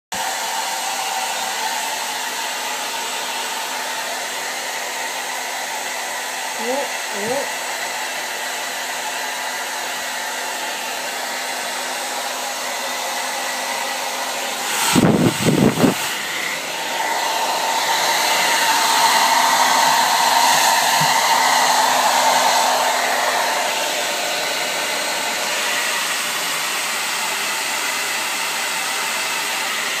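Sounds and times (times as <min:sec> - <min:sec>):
hair dryer blowing: 0:00.1 - 0:30.0.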